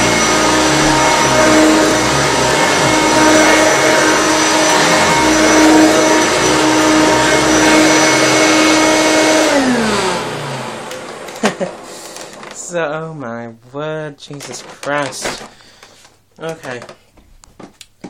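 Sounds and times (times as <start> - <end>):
vacuum motor winding down: 0.0 - 12.6
upright vacuum cleaner running: 0.0 - 12.7.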